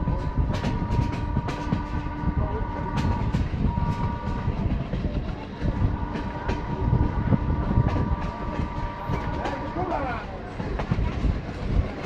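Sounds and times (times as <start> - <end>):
diesel locomotive chugging: 0.0 - 12.0
thin steady whine: 0.0 - 12.0
wheels clicking over rail joints: 0.0 - 12.0.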